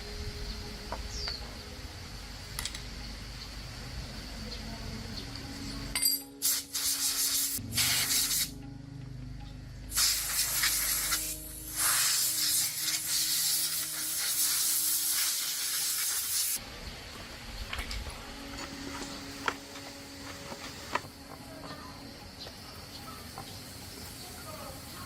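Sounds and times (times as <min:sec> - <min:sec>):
spray hissing: 0:06.4 - 0:08.6, 0:09.9 - 0:16.6.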